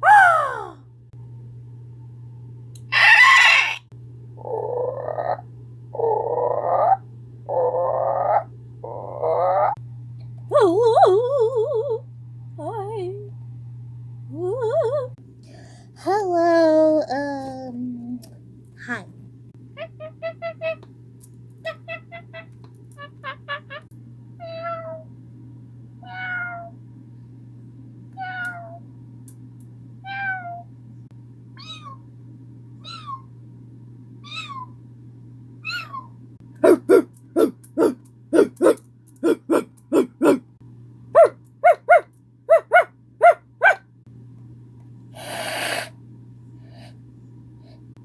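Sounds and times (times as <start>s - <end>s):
breathy hiss-like noise: 45.1s - 47.0s.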